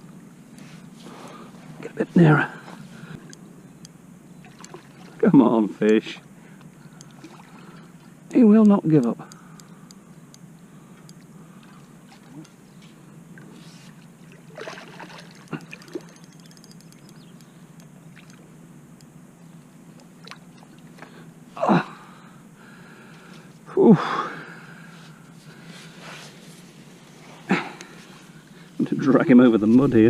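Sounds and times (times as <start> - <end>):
steady low hum: 0.0 - 30.0
faint clicks: 4.6 - 4.8, 8.3 - 11.8, 15.4 - 18.4
man grunting: 21.6 - 22.2.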